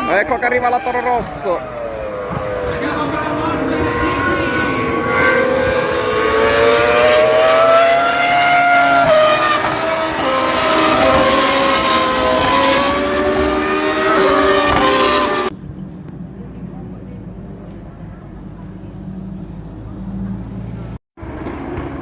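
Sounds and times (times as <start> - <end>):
racing car engines passing: 0.0 - 15.6.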